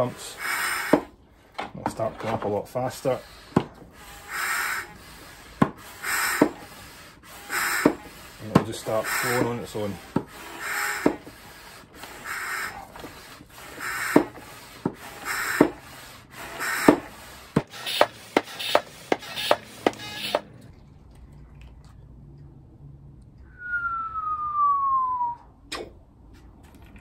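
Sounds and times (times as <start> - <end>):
hand pump strokes hissing: 0.0 - 1.2, 2.5 - 20.5.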